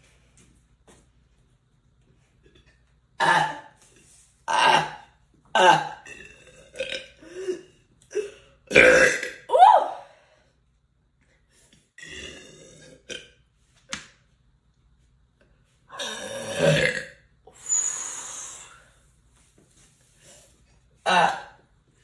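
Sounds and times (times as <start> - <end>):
person burping: 3.2 - 3.8, 4.5 - 9.5, 12.0 - 13.4, 15.9 - 17.3, 21.0 - 21.6.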